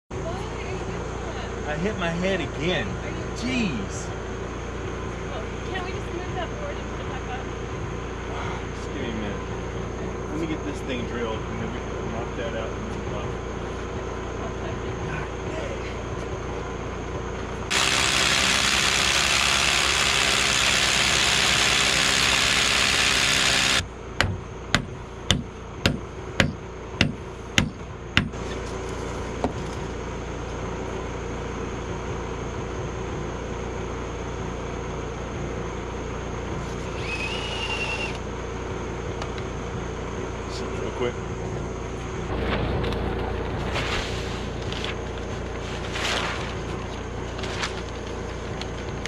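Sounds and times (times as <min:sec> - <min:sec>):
hammer drill boring into concrete: 0:17.7 - 0:23.8.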